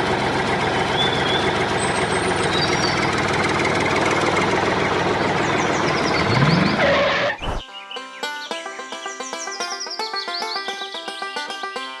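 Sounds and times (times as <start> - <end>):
engine running steadily: 0.0 - 7.2.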